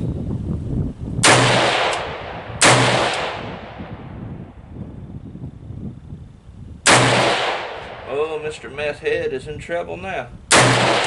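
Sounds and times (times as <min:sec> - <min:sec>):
rifle shots echoing: 0:01.2 - 0:04.1, 0:06.8 - 0:08.5, 0:10.5 - 0:11.0.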